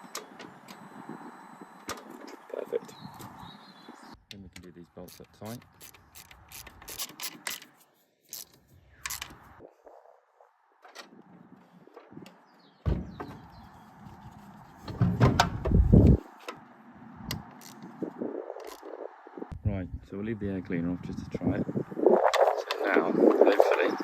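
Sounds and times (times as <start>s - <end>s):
spanner metal clicks and clunks: 4.3s - 7.7s.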